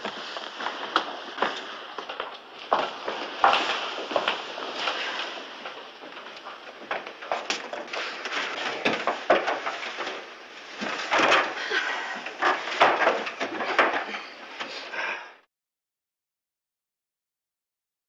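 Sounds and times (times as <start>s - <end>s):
footsteps on wooden boards: 0.0s - 14.8s.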